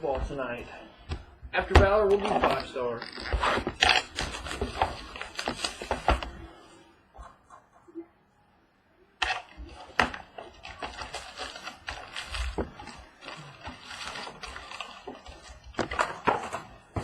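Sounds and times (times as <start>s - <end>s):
plastic wrapping and cardboard crinkling: 1.6s - 6.7s, 9.3s - 17.0s.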